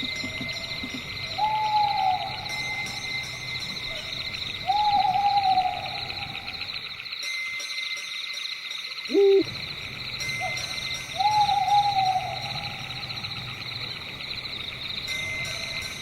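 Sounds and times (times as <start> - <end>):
high pulsing insect chorus: 0.0 - 16.0
owl hooting: 1.3 - 2.7, 4.7 - 6.6, 9.1 - 9.5, 11.2 - 13.1.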